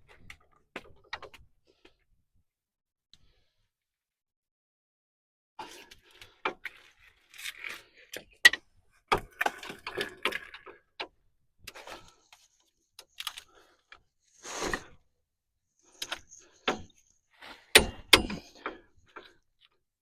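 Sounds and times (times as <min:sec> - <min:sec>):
tools and metal parts clanking: 0:17.6 - 0:19.3.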